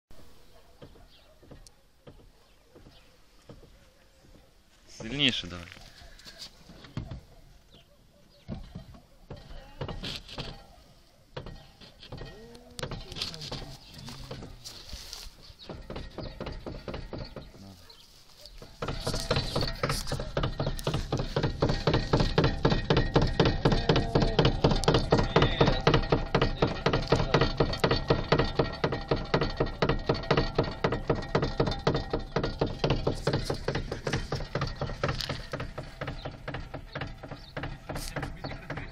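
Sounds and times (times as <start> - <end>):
steering rack knocking: 11.4 - 14.7, 15.3 - 17.7, 18.5 - 38.9.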